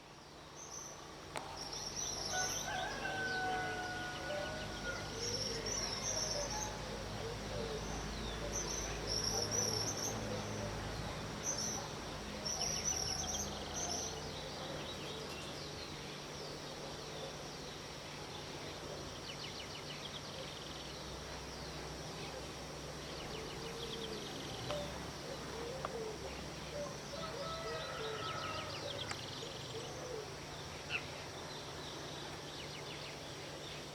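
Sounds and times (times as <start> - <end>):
rooster crowing: 2.2 - 5.2, 27.1 - 29.2.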